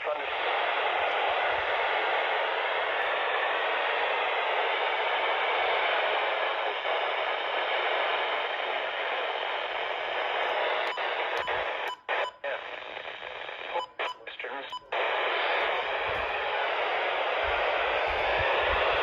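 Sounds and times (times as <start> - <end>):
radio static hiss: 0.0 - 19.0.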